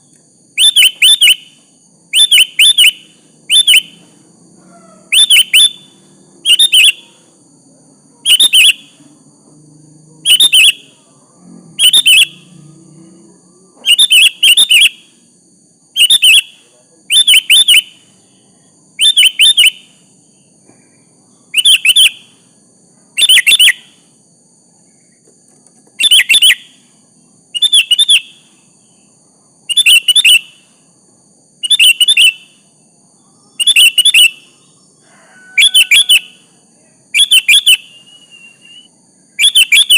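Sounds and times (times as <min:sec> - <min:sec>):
bird chirping calls: 0:00.6 - 0:07.3, 0:08.2 - 0:09.0, 0:10.2 - 0:11.0, 0:11.8 - 0:12.6, 0:13.8 - 0:15.2, 0:16.0 - 0:18.3, 0:19.0 - 0:20.0, 0:21.4 - 0:22.4, 0:23.2 - 0:24.0, 0:26.0 - 0:26.8, 0:27.5 - 0:28.5, 0:29.7 - 0:30.7, 0:31.6 - 0:32.6, 0:33.4 - 0:34.8, 0:35.4 - 0:36.5, 0:37.2 - 0:39.9.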